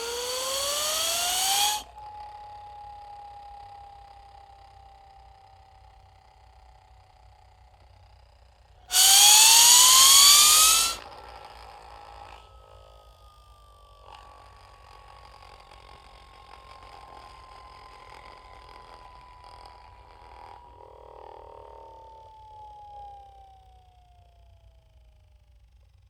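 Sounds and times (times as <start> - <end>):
hiss: 0.0 - 1.8, 8.9 - 11.0
whistle sweeping upward: 0.0 - 4.3, 8.9 - 11.2
long falling whistle: 0.0 - 6.1, 8.9 - 25.0.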